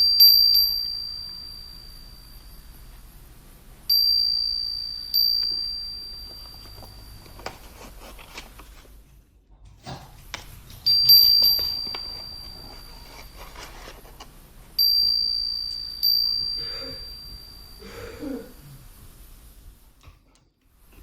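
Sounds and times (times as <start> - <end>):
small metal chime ringing: 0.0 - 3.3, 3.9 - 7.6, 10.8 - 13.5, 14.8 - 18.7
handling rustles: 5.1 - 15.0.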